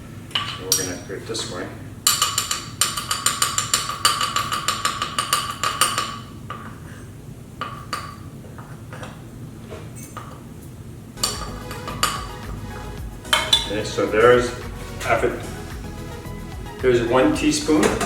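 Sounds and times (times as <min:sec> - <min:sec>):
metal spoon clinking on container: 0:11.2 - 0:12.4.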